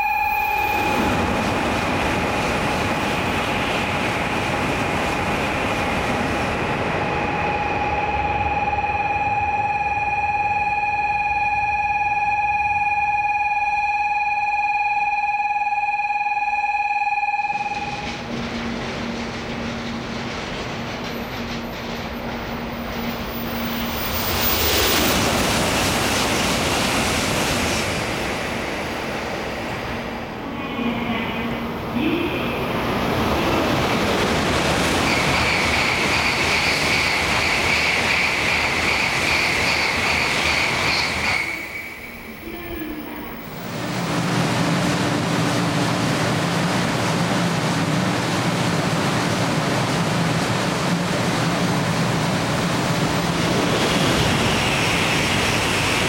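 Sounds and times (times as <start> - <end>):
ringing warning bell: 0.0 - 2.9, 7.2 - 18.3
steady electronic tone: 0.0 - 3.7
high-speed train passing: 0.0 - 13.9, 16.4 - 56.0.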